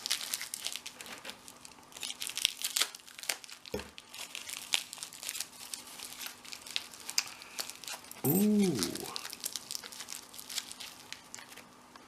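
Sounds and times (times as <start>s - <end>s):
packaging crinkling and tearing: 0.0s - 11.7s.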